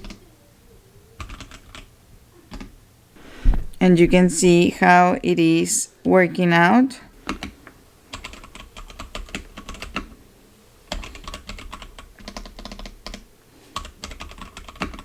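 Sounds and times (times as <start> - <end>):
mechanical keyboard typing: 0.0 - 0.2, 1.2 - 1.9, 2.5 - 2.7, 7.2 - 10.2, 10.9 - 13.2, 13.8 - 15.0.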